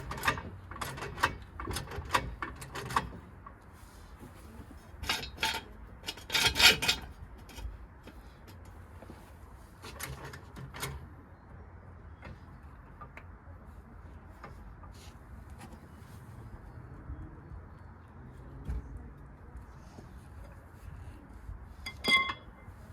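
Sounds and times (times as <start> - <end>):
low steady hum: 0.0 - 22.9
hand tools clinking on metal: 21.9 - 22.6.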